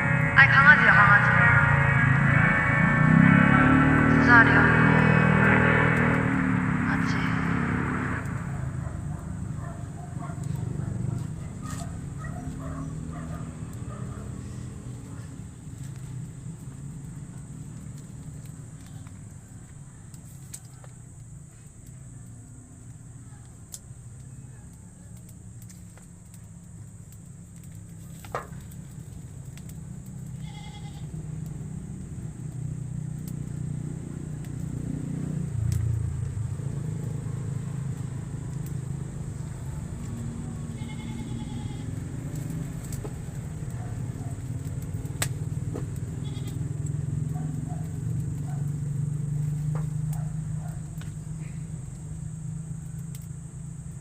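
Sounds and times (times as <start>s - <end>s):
steady low rumble: 0.0s - 20.2s, 26.2s - 49.4s
farm animals bleating: 30.4s - 31.2s, 40.5s - 42.0s, 46.2s - 46.7s.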